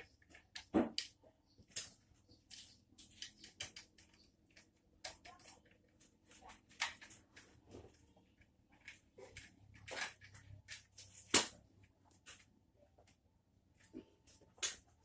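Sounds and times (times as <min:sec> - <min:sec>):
rifle parts clicking and knocking: 0:00.0 - 0:06.0.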